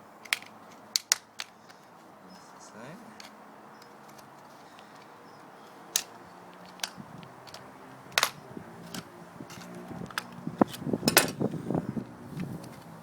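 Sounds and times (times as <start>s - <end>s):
plastic clips snapping: 0.2s - 1.9s, 5.9s - 10.4s.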